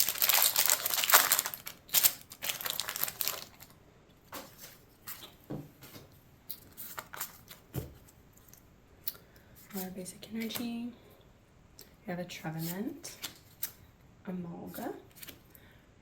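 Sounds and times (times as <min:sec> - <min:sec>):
foil wrapper crinkling and tearing: 0:00.0 - 0:03.8
handling of cards and wrapper: 0:00.0 - 0:03.8.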